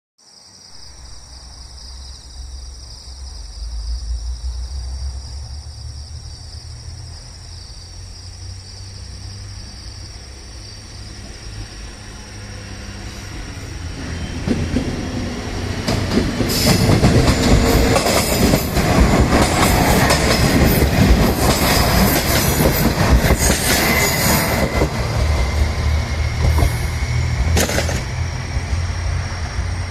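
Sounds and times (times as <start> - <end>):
railcar engine rumble: 0.5 - 29.9
train wheels clattering on rails: 14.0 - 29.9.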